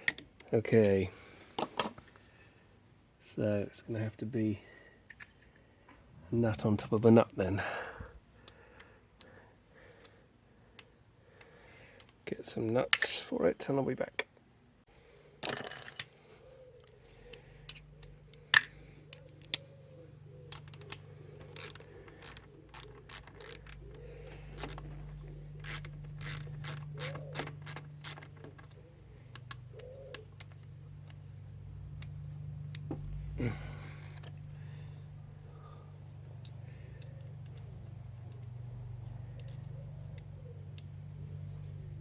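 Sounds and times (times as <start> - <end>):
low steady hum: 14.5 - 42.0.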